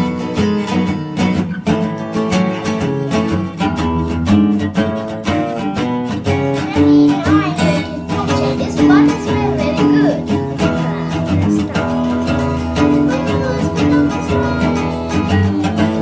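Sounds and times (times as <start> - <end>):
acoustic guitar music: 0.0 - 16.0
person singing lightly: 6.6 - 16.0.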